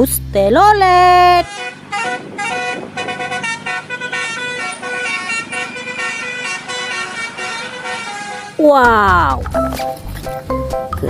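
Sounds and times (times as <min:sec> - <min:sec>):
multi-tone bus horn tune: 0:01.0 - 0:08.8.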